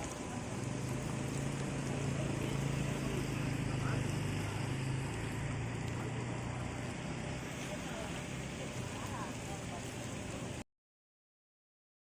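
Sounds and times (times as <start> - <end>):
vehicle engine humming: 0.0 - 10.6.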